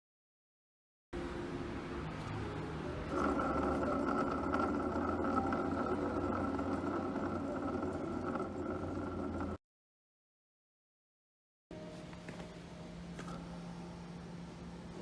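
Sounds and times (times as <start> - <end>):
steady whine: 2.4 - 9.6
scooter engine idling: 2.6 - 9.6.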